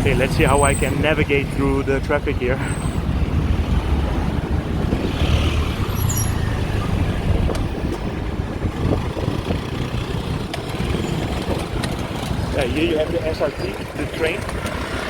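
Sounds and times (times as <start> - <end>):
road traffic rumble: 0.0 - 15.0
brief high squeak: 6.0 - 6.9.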